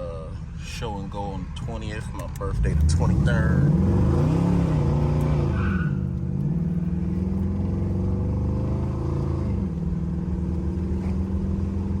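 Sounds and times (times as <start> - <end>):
car engine running: 0.2 - 5.3.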